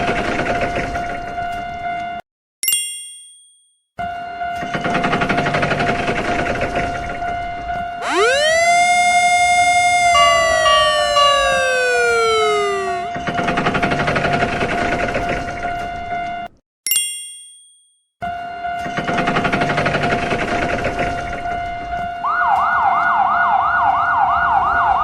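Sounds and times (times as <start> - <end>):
electronic tone with rattling pulse: 8.0 - 13.1
siren winding up and gliding down: 8.0 - 13.3.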